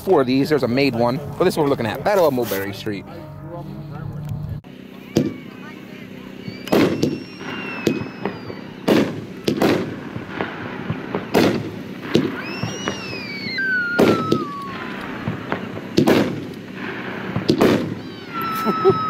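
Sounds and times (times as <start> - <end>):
falling firework whistle: 5.0 - 19.0
firework booming reports: 5.0 - 19.0.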